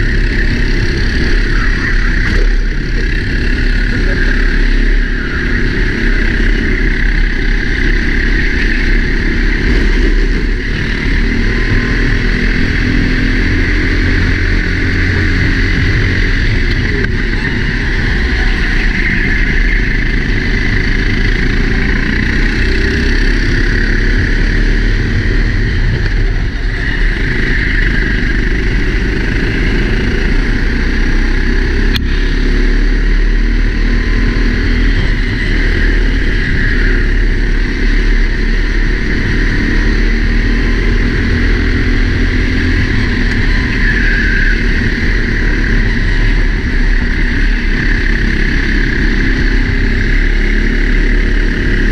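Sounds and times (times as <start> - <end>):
kart engine running hard: 0.0 - 51.9
wind rumble on microphone: 0.0 - 51.9.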